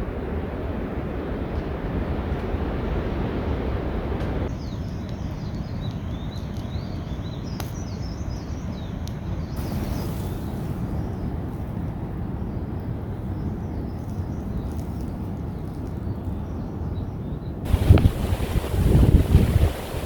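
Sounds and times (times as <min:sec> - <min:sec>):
wind rumbling on microphone: 0:00.0 - 0:07.4, 0:08.8 - 0:20.0
small birds chirping: 0:04.5 - 0:20.0
steady hiss: 0:09.6 - 0:11.6, 0:17.7 - 0:20.0.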